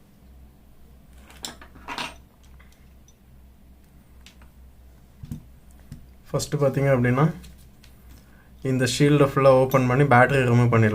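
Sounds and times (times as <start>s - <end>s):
low steady hum: 0.0s - 10.9s.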